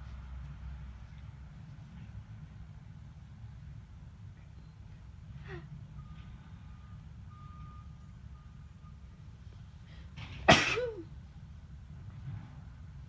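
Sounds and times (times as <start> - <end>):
person sneezing loudly: 10.5 - 11.0.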